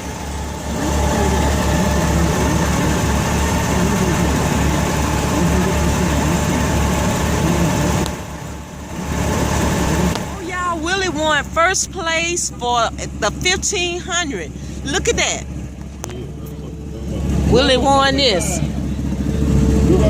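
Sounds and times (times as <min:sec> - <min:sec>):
motorcycle engine idling: 0:00.0 - 0:20.0
faint voices: 0:00.6 - 0:08.2.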